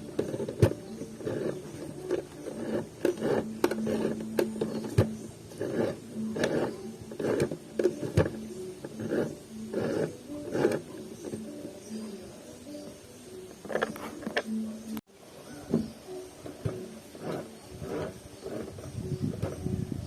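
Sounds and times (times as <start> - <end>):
sewing machine stitching: 0.0 - 11.5.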